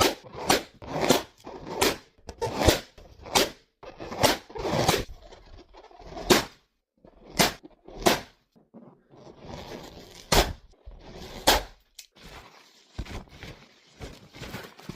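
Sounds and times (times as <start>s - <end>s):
balloons popping: 7.3s - 8.4s, 10.1s - 10.7s.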